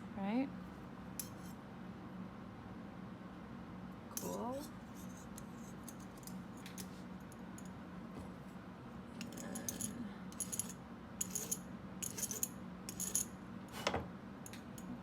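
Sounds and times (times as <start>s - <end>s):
metal tools clinking on workbench: 9.2s - 13.3s.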